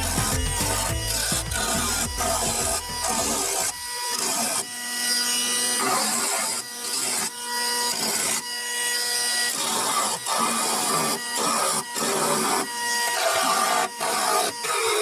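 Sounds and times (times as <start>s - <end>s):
music: 0.0s - 3.9s
tool scraping sheet metal: 0.0s - 4.7s
steady tool whine: 0.0s - 15.0s.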